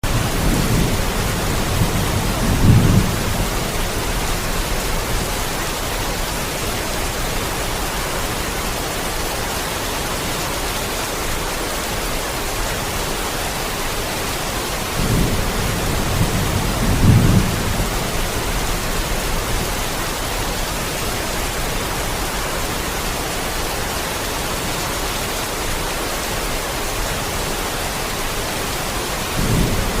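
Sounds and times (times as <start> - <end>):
heavy rain hiss: 0.0 - 30.0
thunder rumbling: 0.1 - 5.5, 15.0 - 19.8, 29.3 - 30.0.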